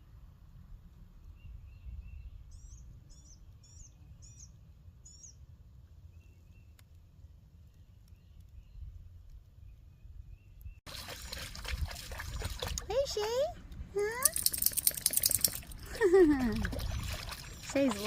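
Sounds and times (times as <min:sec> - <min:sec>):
birds chirping: 0:14.3 - 0:18.0.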